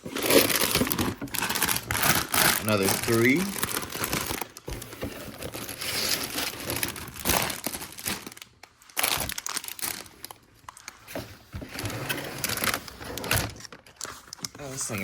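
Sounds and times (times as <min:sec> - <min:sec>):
plastic bags crinkling: 0:00.0 - 0:11.0.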